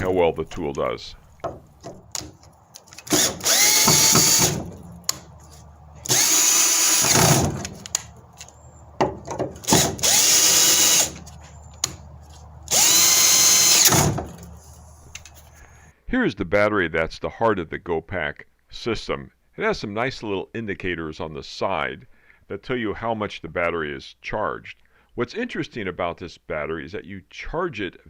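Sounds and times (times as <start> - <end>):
cordless drill motor whine: 2.9 - 5.3, 6.0 - 8.0, 9.6 - 11.9, 12.6 - 14.4
small clicks: 6.9 - 8.6, 15.1 - 15.7.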